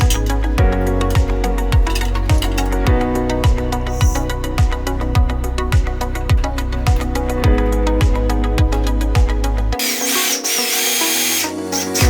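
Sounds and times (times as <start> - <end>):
deep kick drum: 0.0 - 9.5
sustained bass line: 0.0 - 9.8.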